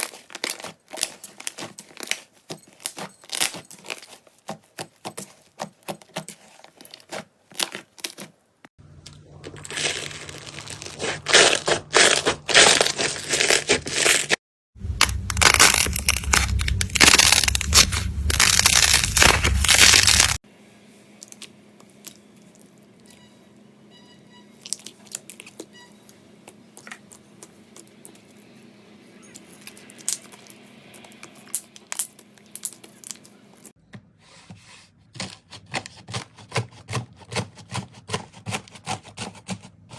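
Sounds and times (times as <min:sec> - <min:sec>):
slime crackling and popping: 0:15.0 - 0:20.4.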